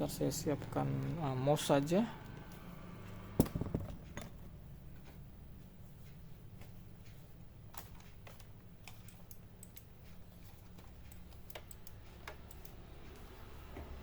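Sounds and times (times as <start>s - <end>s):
computer mouse clicks and taps: 6.0s - 14.0s.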